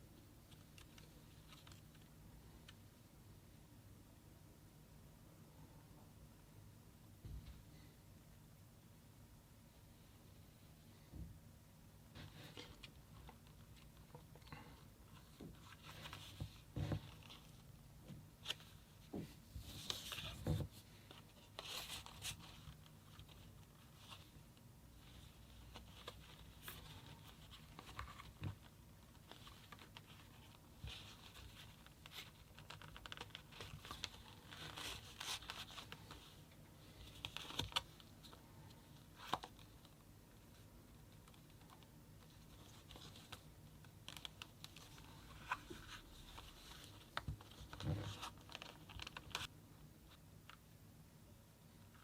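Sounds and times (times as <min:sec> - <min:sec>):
phone and packaging handling: 0:25.0 - 0:36.4, 0:42.4 - 0:49.5.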